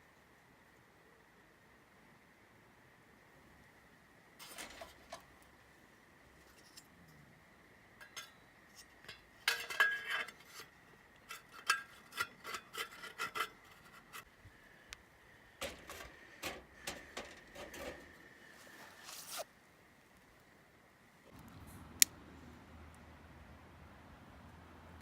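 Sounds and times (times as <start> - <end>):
scraping and rubbing: 9.6 - 14.3, 15.6 - 19.5.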